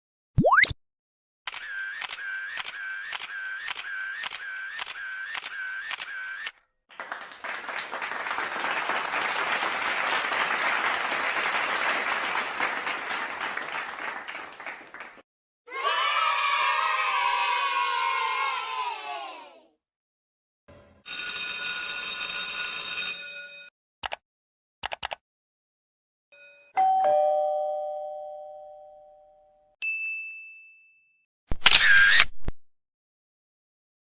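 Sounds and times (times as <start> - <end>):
applause-like clapping noise: 6.9 - 15.2.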